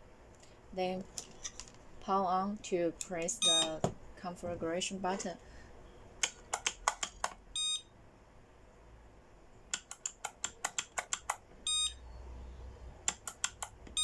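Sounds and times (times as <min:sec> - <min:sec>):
push button clicking: 0:03.0 - 0:04.0, 0:06.2 - 0:07.4, 0:09.7 - 0:11.4, 0:13.1 - 0:14.0.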